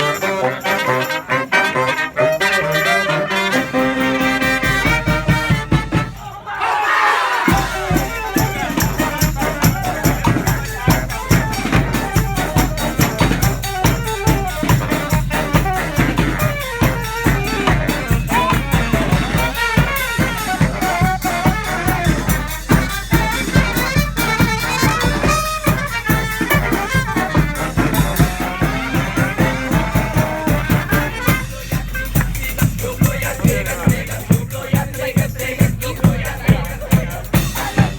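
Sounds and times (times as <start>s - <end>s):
marching band horns and drums: 0.0s - 37.9s.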